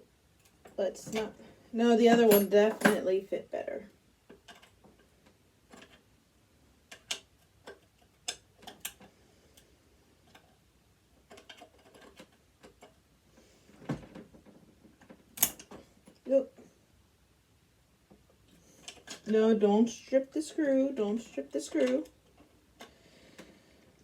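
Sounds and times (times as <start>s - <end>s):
screwdriver clicking on metal: 2.2s - 3.0s, 15.4s - 15.7s.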